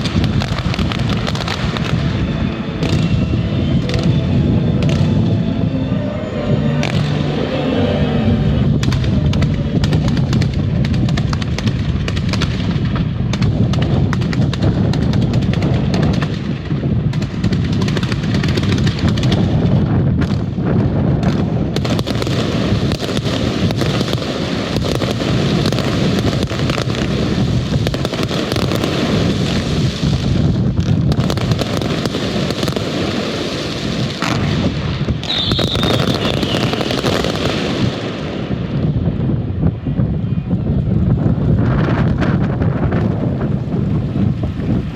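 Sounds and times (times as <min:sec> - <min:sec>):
fireworks booming and crackling: 0:00.0 - 0:05.7, 0:08.8 - 0:44.9
high firework whistle: 0:00.0 - 0:11.6, 0:35.2 - 0:38.1.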